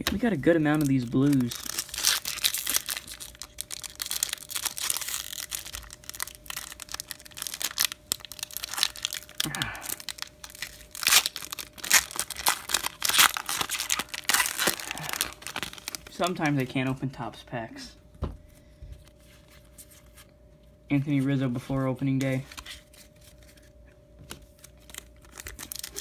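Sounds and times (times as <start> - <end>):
cards shuffling: 0.0 - 3.2
card pack wrappers tearing and crinkling: 0.0 - 16.9, 24.3 - 26.0.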